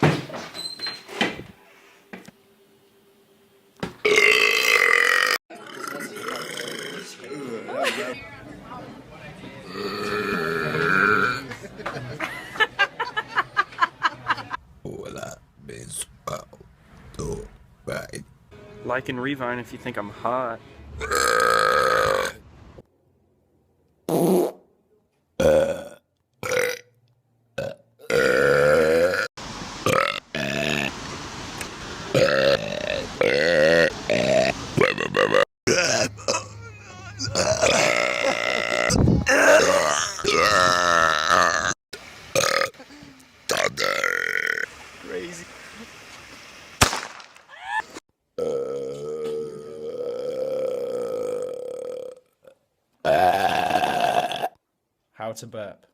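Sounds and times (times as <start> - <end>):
person belching loudly: 4.0 - 7.8, 9.6 - 11.5, 21.0 - 22.4, 25.4 - 26.9, 27.6 - 29.3, 32.2 - 41.8, 42.4 - 42.8, 43.5 - 44.6, 48.4 - 54.6
person burping: 4.0 - 7.8, 9.6 - 11.5, 21.0 - 22.4, 25.4 - 26.9, 27.6 - 29.3, 32.2 - 41.8, 42.4 - 42.8, 43.5 - 44.6, 48.4 - 54.6.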